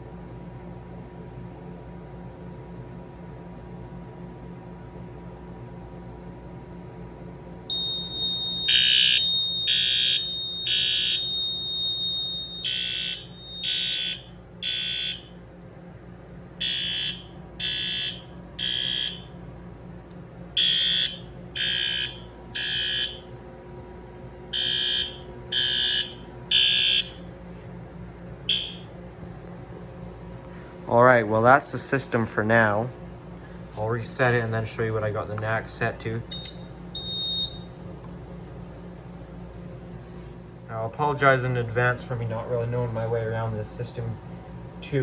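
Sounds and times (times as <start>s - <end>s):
steady high tone: 7.7s - 15.3s, 28.5s - 29.0s
fire alarm horn blasts: 7.7s - 15.4s, 16.6s - 19.4s, 20.6s - 23.3s, 24.5s - 27.3s, 28.4s - 29.0s, 36.3s - 37.7s.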